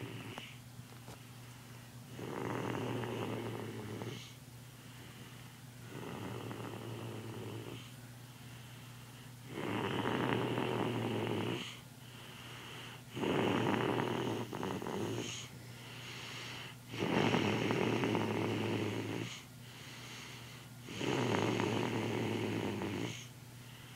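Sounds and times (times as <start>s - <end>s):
child snoring: 0.0s - 0.6s, 2.1s - 4.4s, 5.8s - 7.9s, 9.4s - 11.8s, 12.4s - 23.3s
quiet breaths: 0.0s - 23.9s.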